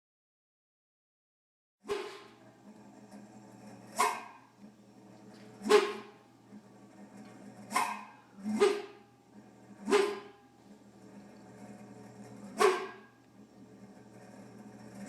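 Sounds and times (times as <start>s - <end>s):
freezer low hum: 2.2s - 15.0s
freezer compressor barking: 3.6s - 6.4s, 9.8s - 13.3s.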